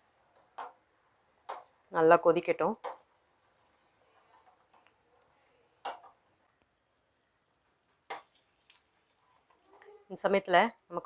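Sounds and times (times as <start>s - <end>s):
faint high chirps: 0.0s - 1.8s, 2.7s - 6.7s.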